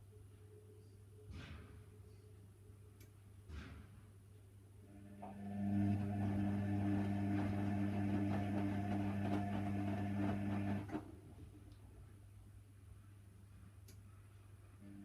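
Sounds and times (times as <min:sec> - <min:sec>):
washer dryer humming with crackle: 0:04.9 - 0:12.5.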